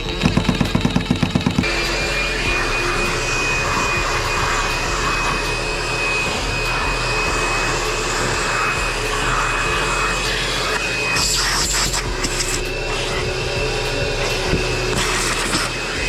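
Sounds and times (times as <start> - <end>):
cordless drill whining: 0.0 - 16.0.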